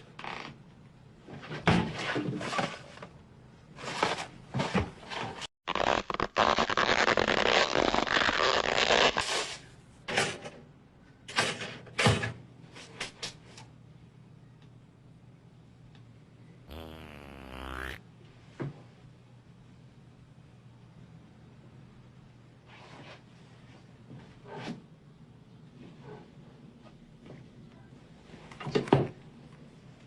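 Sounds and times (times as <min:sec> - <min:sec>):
short comic cartoon noises: 0:16.7 - 0:18.0.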